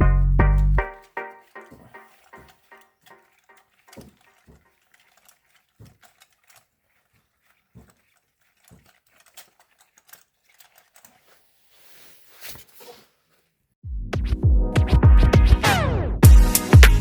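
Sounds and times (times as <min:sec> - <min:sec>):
hand tools clicking on metal: 0:00.0 - 0:11.4.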